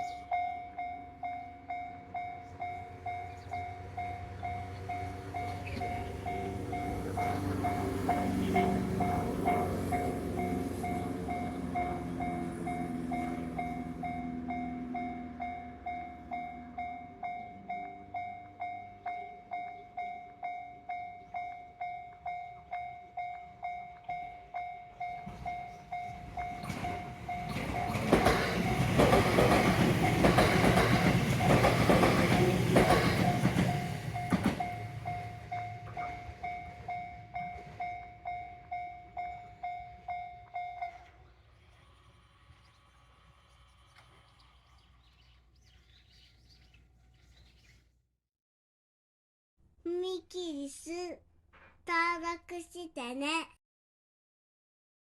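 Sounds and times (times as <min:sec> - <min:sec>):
level-crossing bell ringing: 0:00.0 - 0:30.4, 0:32.4 - 0:41.2
train wheels clacking over rails: 0:25.1 - 0:38.4.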